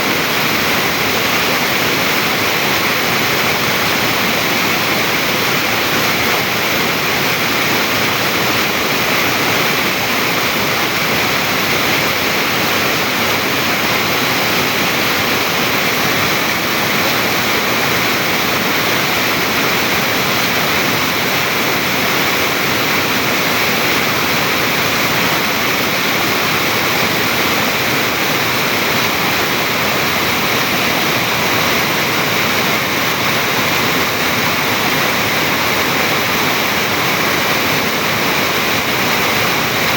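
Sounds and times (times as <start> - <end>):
stream water rushing over rock: 0.0 - 39.9.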